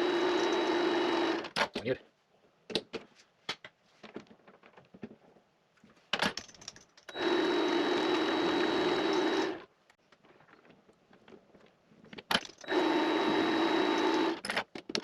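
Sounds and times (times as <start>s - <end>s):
mini lathe humming and whining: 0.0s - 1.4s, 7.1s - 9.6s, 12.7s - 14.4s
metal parts clicking and knocking: 6.2s - 7.2s, 12.1s - 12.7s.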